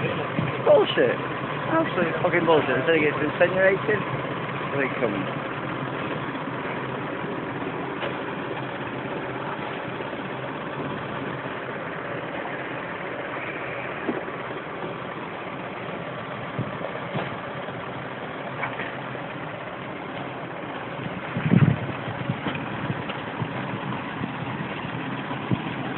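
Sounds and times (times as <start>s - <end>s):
vehicle engine idling: 0.0s - 25.9s.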